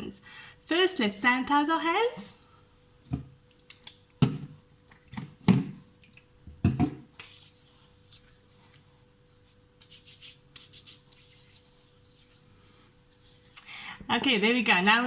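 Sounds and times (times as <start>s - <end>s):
hands rubbing together: 7.2s - 13.6s.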